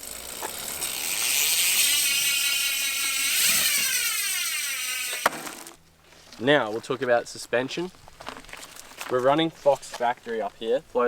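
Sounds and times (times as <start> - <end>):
bike hub freewheel buzzing: 0.0 - 5.8.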